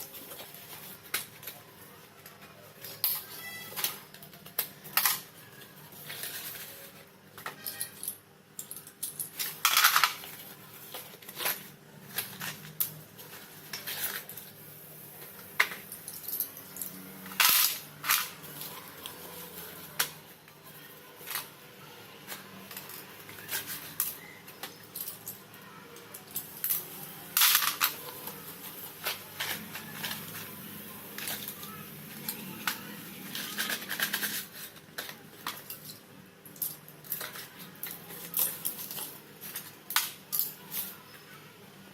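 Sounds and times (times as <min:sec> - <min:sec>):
slate pencils snapping and crunching: 0:26.0 - 0:36.0, 0:36.6 - 0:41.0.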